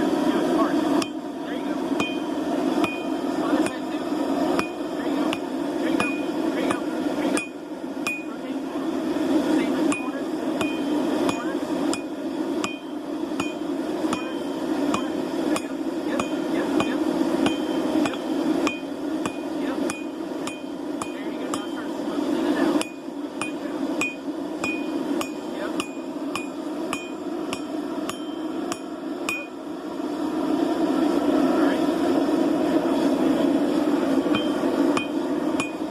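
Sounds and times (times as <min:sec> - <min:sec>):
low rushing noise: 0:00.0 - 0:35.9
hammer striking metal on anvil: 0:01.0 - 0:01.2, 0:02.0 - 0:03.9, 0:04.6 - 0:08.3, 0:09.9 - 0:21.8, 0:22.8 - 0:29.6, 0:34.3 - 0:35.9.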